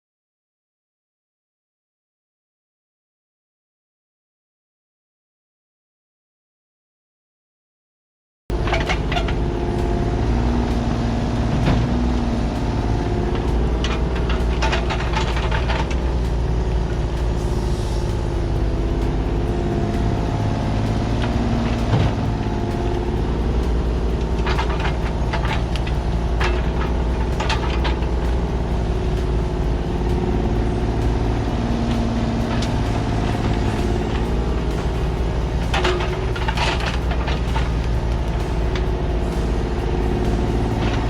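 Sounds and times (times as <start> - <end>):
bucket and tracks clanking: 8.5 - 41.0
diesel engine running under load: 8.5 - 41.0.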